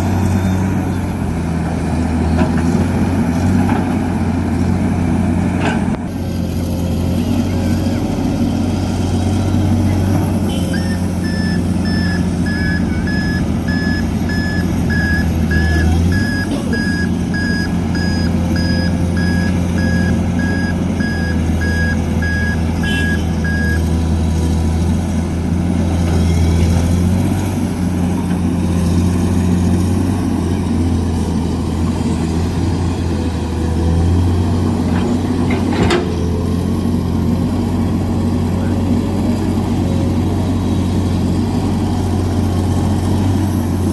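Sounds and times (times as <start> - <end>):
heavy diesel engine running: 0.0 - 43.9
reversing alarm beeping: 10.5 - 23.9.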